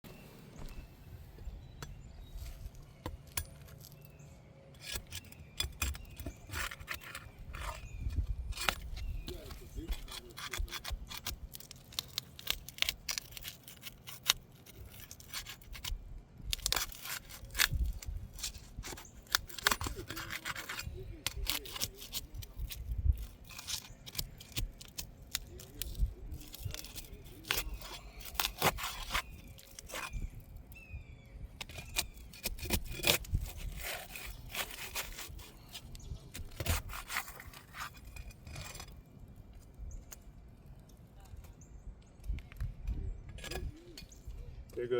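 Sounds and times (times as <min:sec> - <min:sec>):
scraping on roof shingles: 0:31.6 - 0:39.0.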